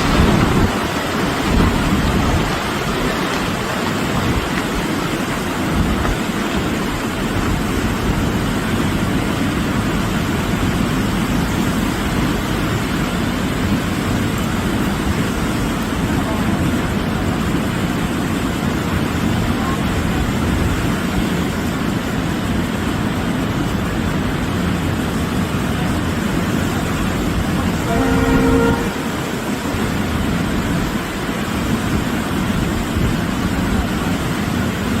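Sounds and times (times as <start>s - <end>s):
loud rushing noise: 0.0s - 19.2s, 20.5s - 35.0s
short horn blast: 27.5s - 29.9s.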